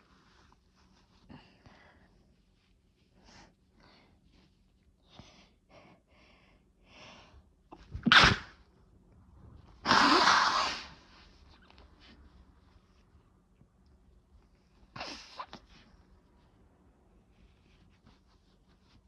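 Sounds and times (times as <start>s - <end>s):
person sneezing: 8.0s - 8.5s, 9.9s - 11.0s.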